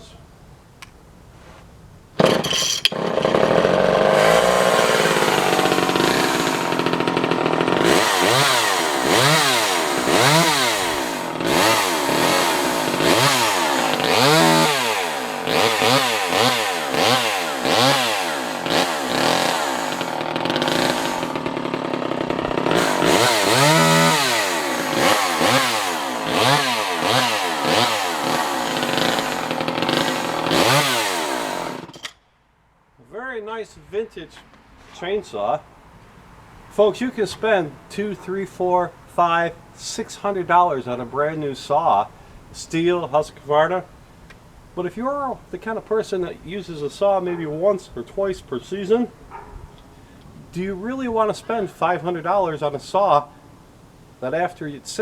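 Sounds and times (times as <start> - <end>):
chainsaw revving: 2.2 - 32.1.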